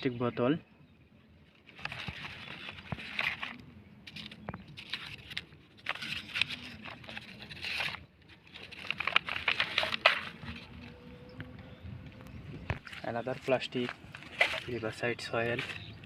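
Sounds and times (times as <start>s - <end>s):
plastic crinkling: 1.6s - 11.0s, 12.7s - 16.0s.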